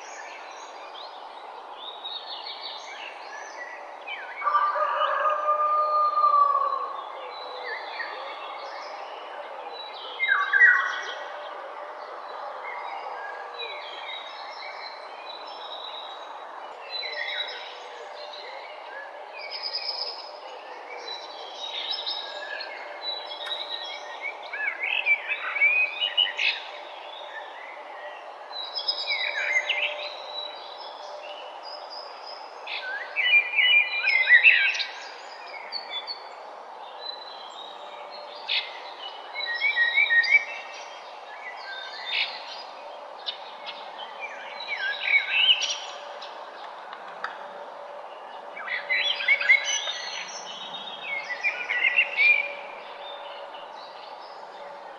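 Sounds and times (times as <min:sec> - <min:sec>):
songbirds chirping and singing: 0:00.0 - 0:54.9
low outdoor hum: 0:34.9 - 0:54.9.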